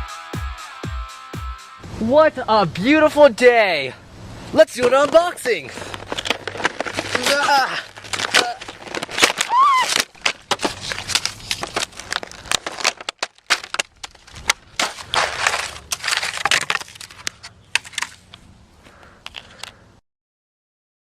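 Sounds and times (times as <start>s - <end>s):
packaging crinkling and tearing: 5.0s - 18.4s, 19.0s - 19.8s.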